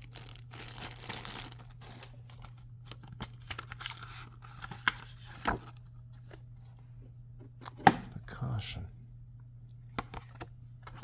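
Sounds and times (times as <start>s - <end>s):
plastic packaging crinkling: 0.0s - 5.6s
low steady hum: 0.0s - 11.0s.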